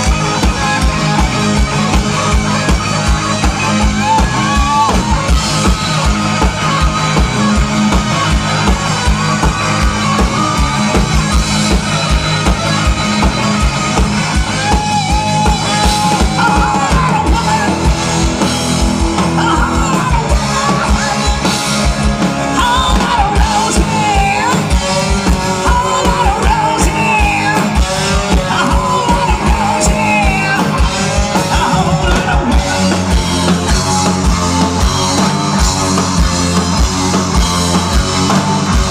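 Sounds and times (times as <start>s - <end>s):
bass guitar: 0.0s - 38.9s
electric guitar: 0.0s - 38.9s
fast drum beat: 0.0s - 38.9s
person singing: 14.6s - 18.3s, 19.2s - 33.8s.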